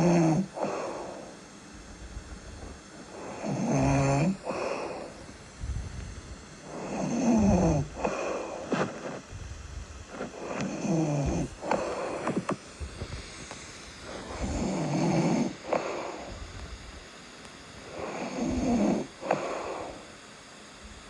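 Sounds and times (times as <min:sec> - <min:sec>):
breathing: 0:00.0 - 0:01.4, 0:02.6 - 0:09.2, 0:10.1 - 0:16.8, 0:17.8 - 0:20.2
person snoring: 0:00.0 - 0:01.4, 0:03.0 - 0:05.4, 0:06.6 - 0:09.2, 0:10.1 - 0:12.6, 0:14.0 - 0:16.5, 0:17.8 - 0:20.0.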